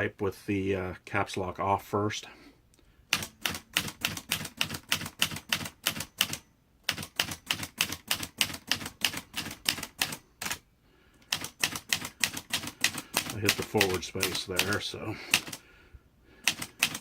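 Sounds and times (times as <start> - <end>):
manual typewriter typing: 3.1 - 10.6, 11.2 - 15.6, 16.4 - 17.0.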